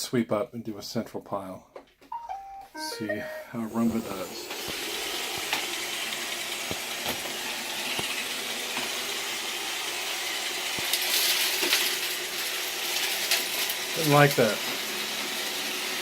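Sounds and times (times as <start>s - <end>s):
robot vacuum whirring: 3.6s - 16.0s.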